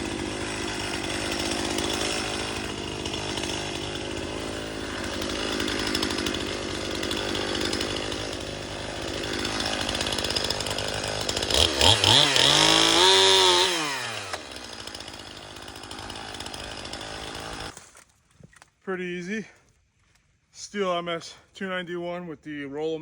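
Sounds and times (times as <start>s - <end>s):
chainsaw cutting and revving: 0.0s - 17.8s.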